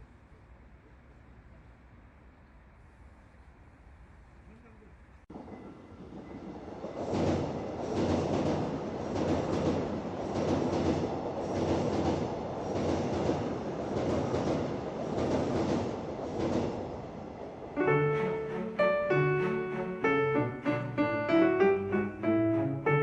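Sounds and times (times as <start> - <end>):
train rumble: 4.4 - 23.0
train wheels clacking: 5.4 - 16.9.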